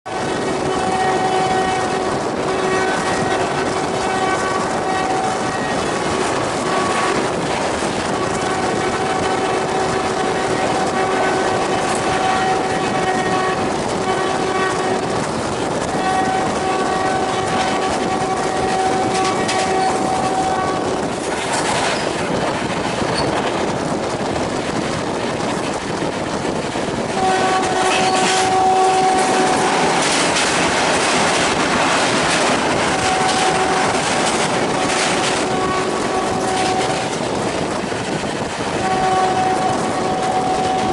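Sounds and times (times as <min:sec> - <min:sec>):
locomotive horn blasts: 0:00.1 - 0:07.4, 0:08.1 - 0:21.0, 0:27.1 - 0:30.2, 0:31.3 - 0:37.3, 0:38.8 - 0:40.9
train wheels clattering on rails: 0:00.1 - 0:40.9.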